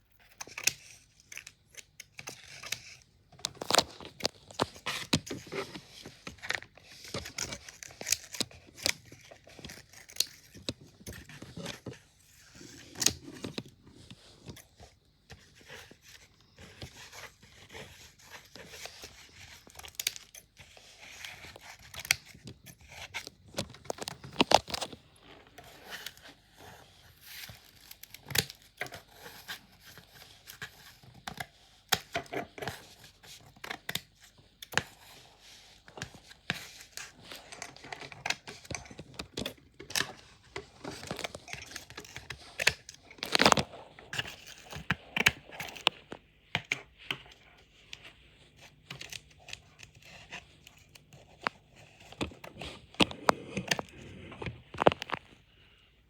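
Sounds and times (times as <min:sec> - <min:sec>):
crinkly tearing: 0:00.4 - 0:14.3, 0:21.0 - 0:30.2, 0:36.8 - 0:46.0, 0:48.9 - 0:55.4.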